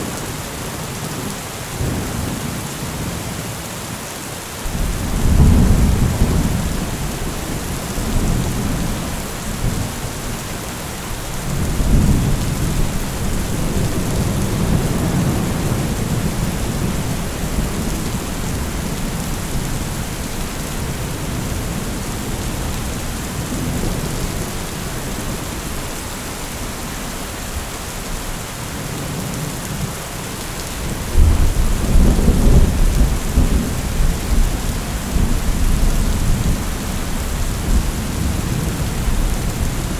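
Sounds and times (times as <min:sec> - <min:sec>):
heavy rain: 0:00.0 - 0:39.9
thunder rumbling: 0:04.7 - 0:26.0, 0:30.8 - 0:39.9.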